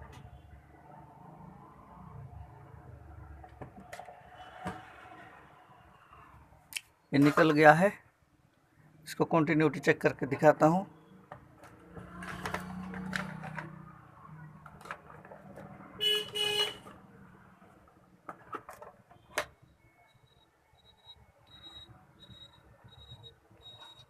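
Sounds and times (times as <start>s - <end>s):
vehicle horn toots: 16.0s - 16.8s.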